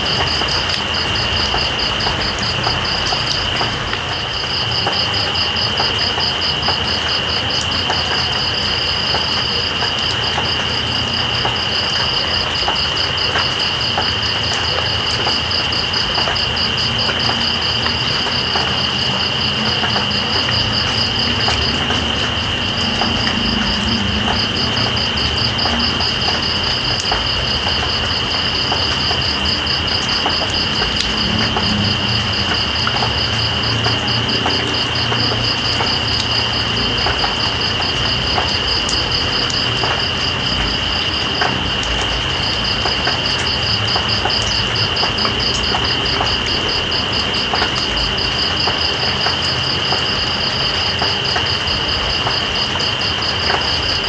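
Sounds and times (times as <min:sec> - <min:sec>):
crickets trilling: 0:00.0 - 0:54.0
rain hiss: 0:00.0 - 0:54.0
water drips: 0:00.0 - 0:54.0.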